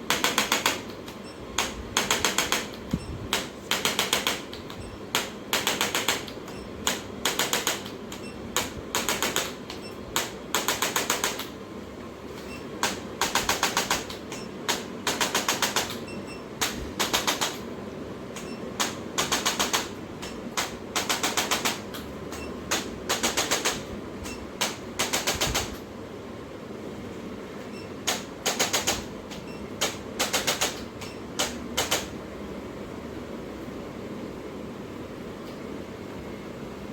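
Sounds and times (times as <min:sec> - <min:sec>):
rapid tapping clicks: 0:00.1 - 0:11.5, 0:12.8 - 0:16.0, 0:18.4 - 0:25.8, 0:28.0 - 0:32.1.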